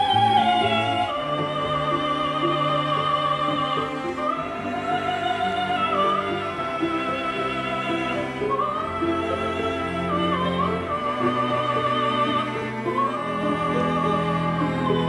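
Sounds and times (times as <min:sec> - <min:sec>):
operatic singing: 0:00.0 - 0:15.0
orchestral accompaniment: 0:00.0 - 0:15.0.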